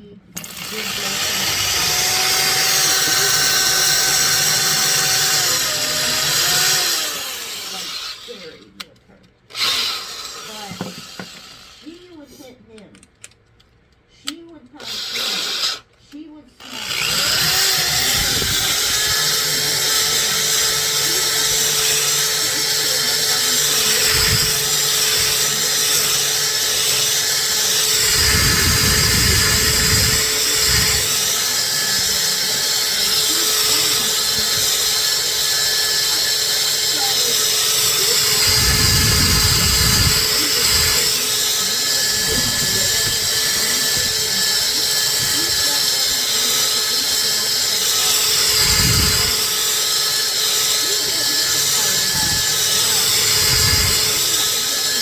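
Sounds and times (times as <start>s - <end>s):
electric power tool running: 0.0s - 8.8s, 9.5s - 12.5s, 14.8s - 15.9s, 16.6s - 55.0s.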